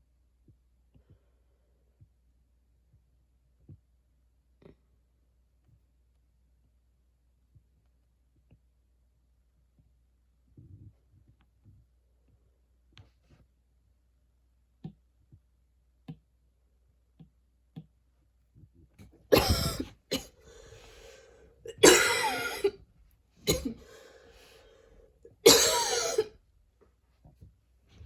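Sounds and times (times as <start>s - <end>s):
breathing: 1.0s - 2.0s, 19.6s - 21.7s, 23.7s - 25.3s
person coughing hard: 19.3s - 20.8s, 21.7s - 22.8s, 23.4s - 24.0s, 25.3s - 26.3s.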